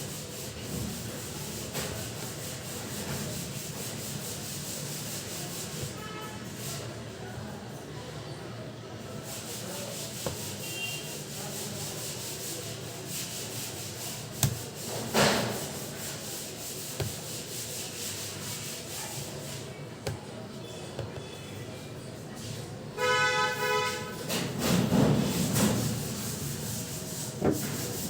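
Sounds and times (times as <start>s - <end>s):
hands scraping laptop case: 14.3s - 17.5s.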